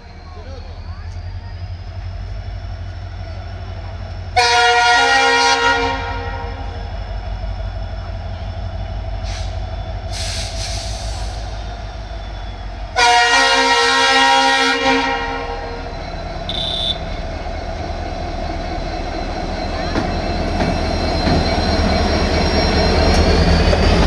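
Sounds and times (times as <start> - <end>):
low rumble of running train: 0.0 - 24.0
locomotive air horn blast: 4.4 - 6.7, 13.0 - 15.8, 16.5 - 17.2.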